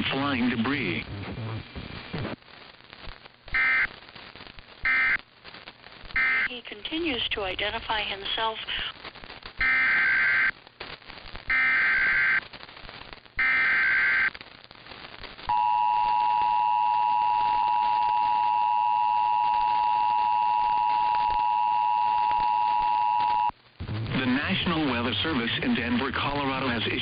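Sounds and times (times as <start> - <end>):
screeching digital data bursts: 9.6 - 10.5, 11.5 - 12.4, 13.4 - 14.3.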